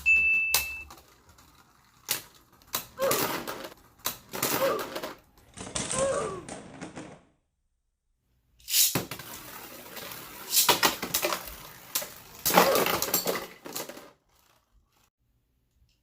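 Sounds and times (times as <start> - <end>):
spinning tops whirring and clashing: 8.6 - 14.6.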